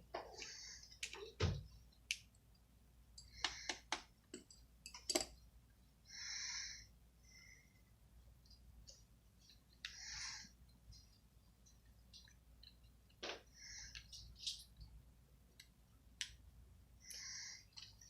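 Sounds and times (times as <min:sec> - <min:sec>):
small tools clicking and tapping: 0:03.2 - 0:05.4.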